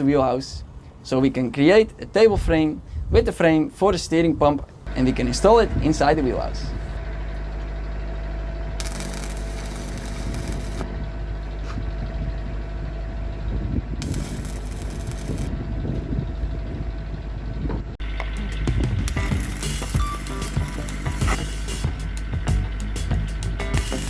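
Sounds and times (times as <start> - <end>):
machinery humming: 4.9 - 24.0
harsh hissing noise: 8.8 - 10.9, 14.0 - 15.5, 19.1 - 22.2, 23.0 - 24.0.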